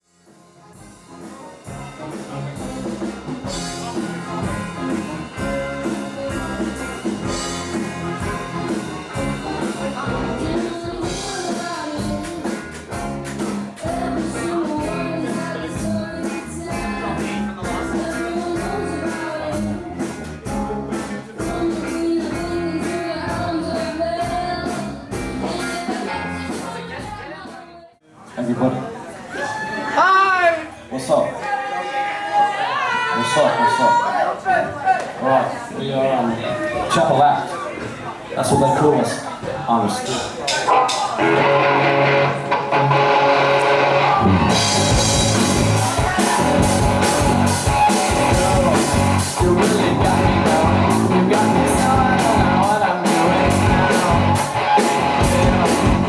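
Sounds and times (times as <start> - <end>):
rock music: 0.0 - 27.5, 40.5 - 56.0.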